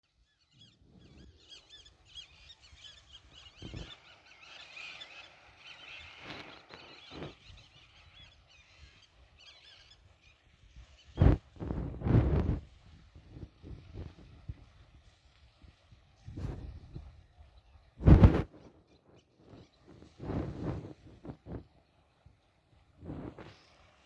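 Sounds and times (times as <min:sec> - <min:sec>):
small birds chirping: 0:00.2 - 0:12.6.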